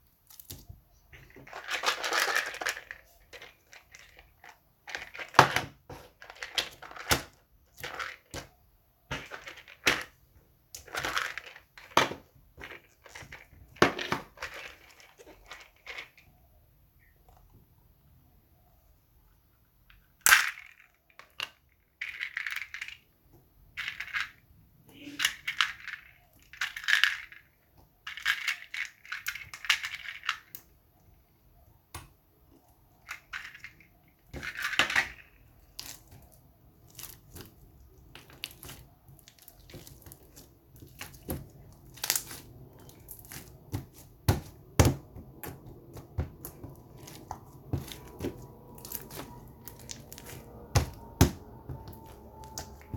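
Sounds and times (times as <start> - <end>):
slime squishing and crackling: 34.3 - 52.9.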